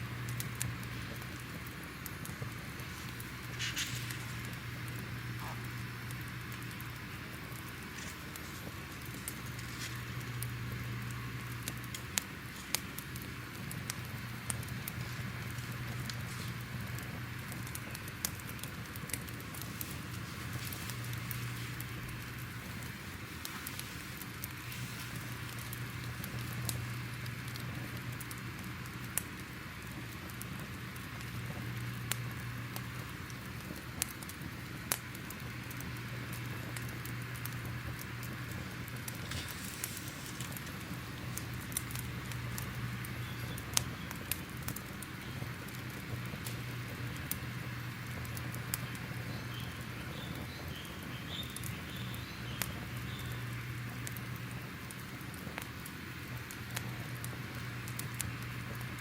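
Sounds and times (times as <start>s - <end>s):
low hum: 0.0s - 34.0s
fire hissing and crackling: 0.0s - 59.0s.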